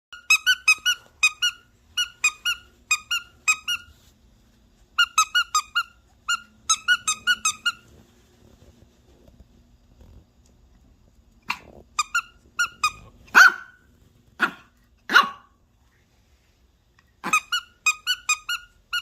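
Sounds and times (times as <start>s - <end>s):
squeaky dog toy squeaking: 0.2s - 4.0s, 5.0s - 7.9s, 11.5s - 13.8s, 17.2s - 19.0s.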